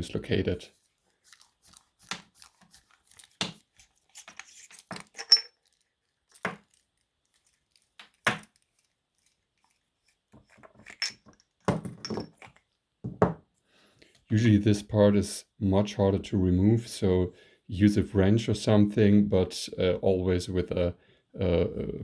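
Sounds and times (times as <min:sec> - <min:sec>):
metal flashlight parts clinking: 0:04.1 - 0:06.8, 0:10.4 - 0:12.6.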